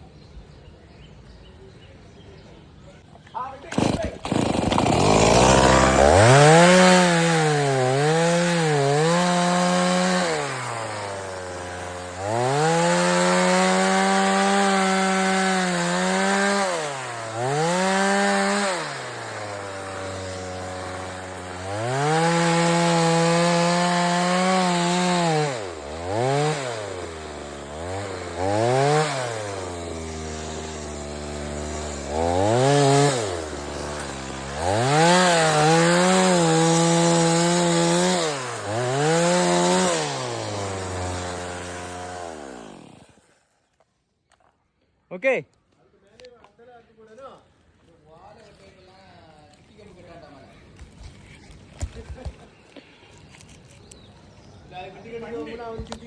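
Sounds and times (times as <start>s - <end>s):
chainsaw cutting wood: 3.3s - 43.8s, 50.8s - 54.1s.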